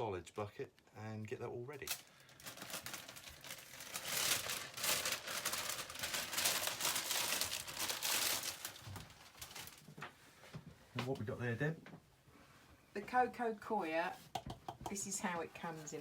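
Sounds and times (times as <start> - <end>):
packaging crinkling and rustling: 1.8 - 10.2.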